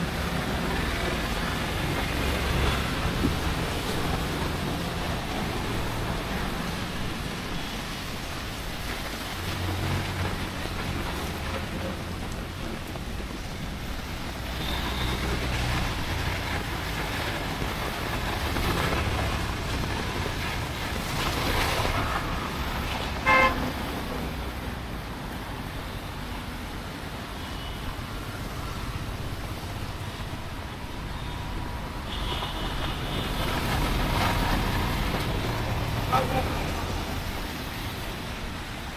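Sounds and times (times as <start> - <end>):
road traffic passing: 0.0 - 38.9
vehicle horn toot: 14.6 - 15.2, 23.2 - 23.7.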